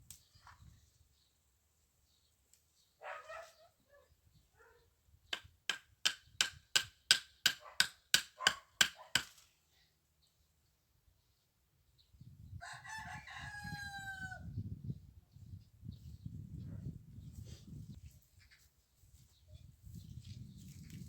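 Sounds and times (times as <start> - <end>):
tool striking sharp knocks: 5.4 - 9.3.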